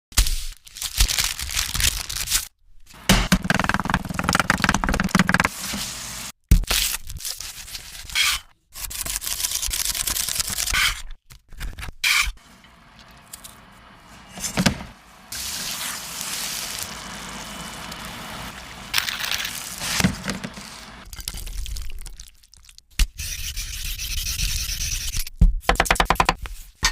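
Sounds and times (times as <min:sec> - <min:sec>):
liquid pouring and dripping: 0:21.0 - 0:22.8.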